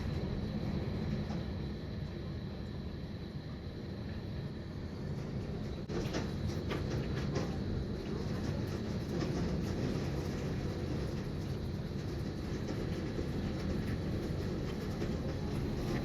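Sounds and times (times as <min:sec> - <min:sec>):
hail and heavy rain clattering: 0:05.9 - 0:16.0.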